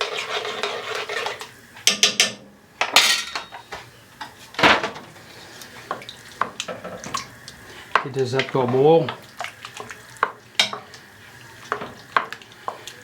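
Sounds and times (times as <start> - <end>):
metal spoon scraping a pot: 0.0 - 1.5.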